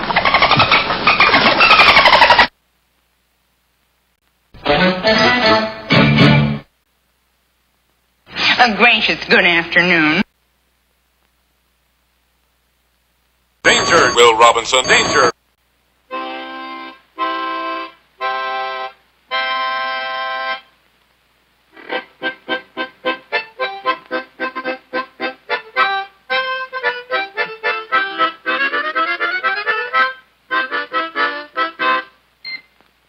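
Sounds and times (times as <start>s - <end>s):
reedy squeezebox music: 4.6s - 6.6s, 16.1s - 20.7s, 21.8s - 32.2s.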